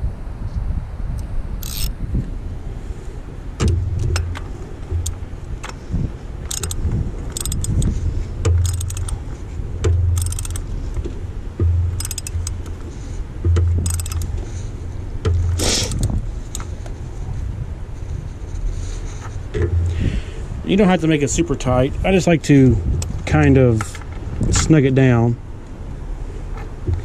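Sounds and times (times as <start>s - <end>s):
wind rumbling on microphone: 0.0s - 27.0s
metal cap clicking and rattling: 6.5s - 7.9s, 8.5s - 9.2s, 9.9s - 10.7s, 11.9s - 12.8s, 13.6s - 14.4s.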